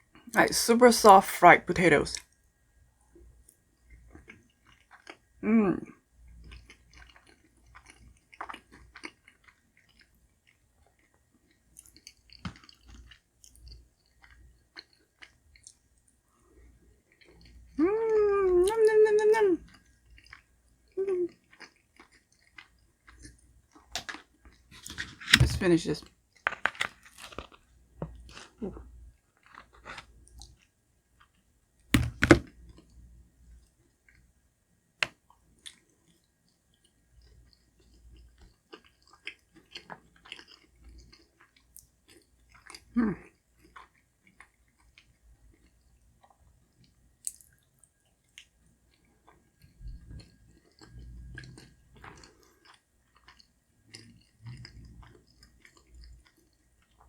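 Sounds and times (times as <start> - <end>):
person chewing: 4.1 - 5.2, 6.4 - 11.1, 11.8 - 15.8, 19.6 - 25.6, 32.0 - 32.5, 36.8 - 46.4, 48.4 - 57.0.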